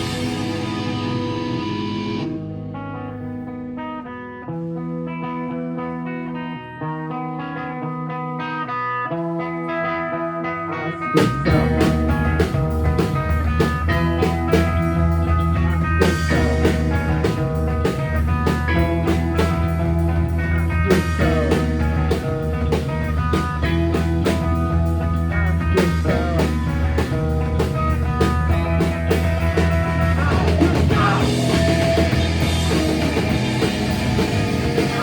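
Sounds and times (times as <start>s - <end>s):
drum kit: 0.0s - 2.4s, 11.1s - 35.0s
bass line: 0.0s - 5.9s, 9.3s - 35.0s
guitar: 0.0s - 35.0s.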